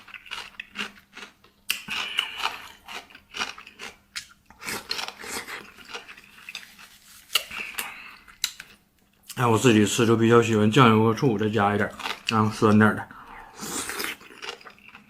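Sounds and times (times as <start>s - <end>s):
chewing: 0.0s - 9.4s, 13.2s - 15.0s.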